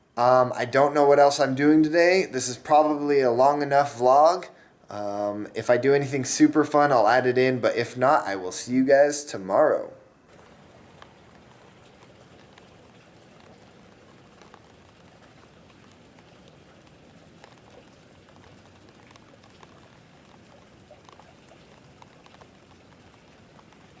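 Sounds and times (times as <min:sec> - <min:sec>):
faint steady rain: 0:00.0 - 0:24.0
raindrops pattering and ticking: 0:10.3 - 0:24.0.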